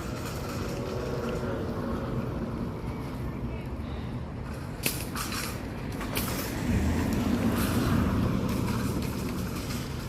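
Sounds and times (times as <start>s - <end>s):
vehicle passing by: 5.9s - 10.0s.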